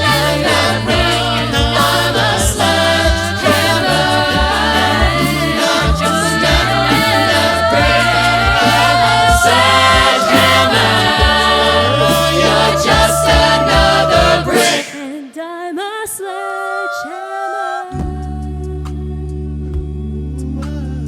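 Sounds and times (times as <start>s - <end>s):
sung bass line: 0.0s - 14.8s, 18.0s - 21.0s
vocal percussion beat: 0.0s - 20.0s
a cappella ensemble singing chords: 0.0s - 21.0s.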